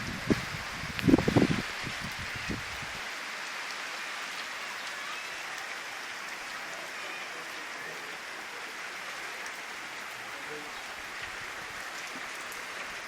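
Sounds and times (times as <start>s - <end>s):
steady rain hissing: 0.0s - 13.0s.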